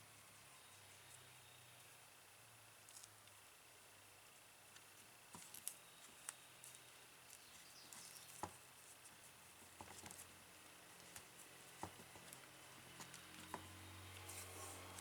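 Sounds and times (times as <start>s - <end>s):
room hiss: 0.0s - 15.0s.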